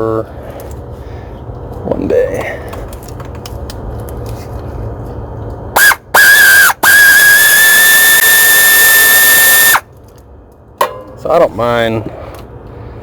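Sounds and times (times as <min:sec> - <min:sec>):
pneumatic air ratchet whine: 0:05.8 - 0:09.8.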